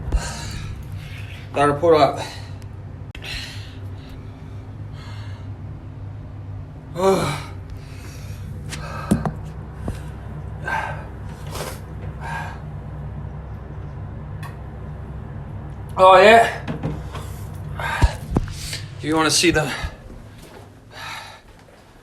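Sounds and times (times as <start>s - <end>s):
man breathing heavily: 0.0s - 6.0s, 7.0s - 13.4s, 17.0s - 22.0s
steady low hum: 0.0s - 22.0s.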